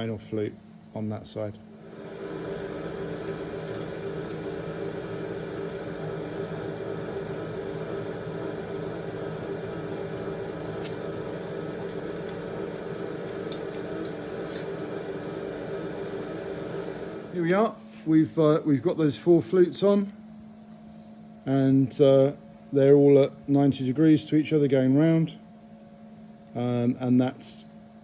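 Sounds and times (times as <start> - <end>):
milling machine cutting: 1.9 - 17.5.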